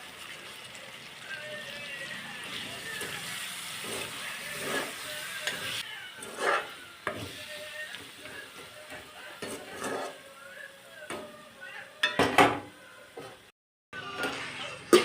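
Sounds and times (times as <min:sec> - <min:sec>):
food sizzling in oil: 0:00.0 - 0:15.0
spatula scraping a pan: 0:02.5 - 0:10.4.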